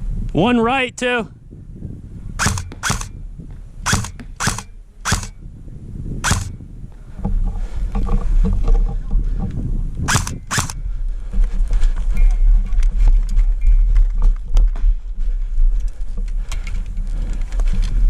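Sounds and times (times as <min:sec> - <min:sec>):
airsoft gun shots: 0:02.4 - 0:03.1, 0:03.8 - 0:05.4, 0:06.2 - 0:06.6, 0:10.1 - 0:10.8.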